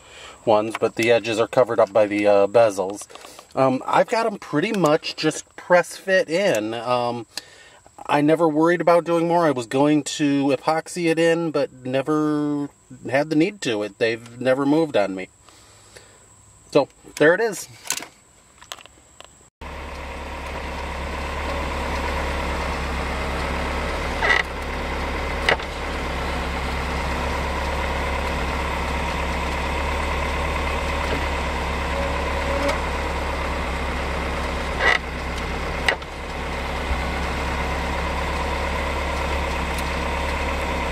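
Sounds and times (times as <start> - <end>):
car engine idling: 19.6 - 40.9.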